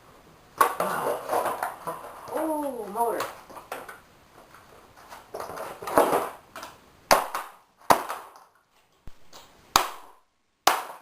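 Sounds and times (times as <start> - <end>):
rustling and scraping: 0.8 - 6.8.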